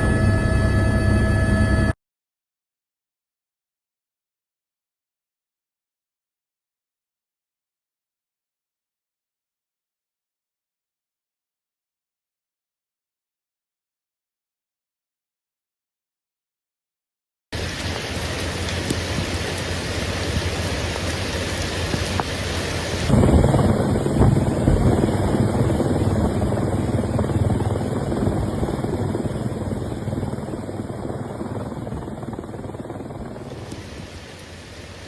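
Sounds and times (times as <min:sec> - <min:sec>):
steady rushing noise: 0:17.6 - 0:35.0.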